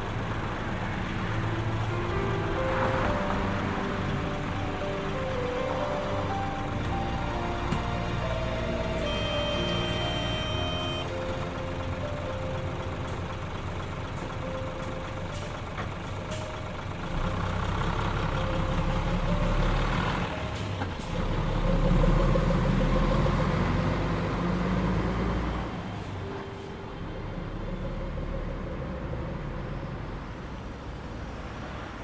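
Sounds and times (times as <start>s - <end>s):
threshing machinery noise: 0.0s - 16.8s
combine harvester engine drone: 0.0s - 31.6s.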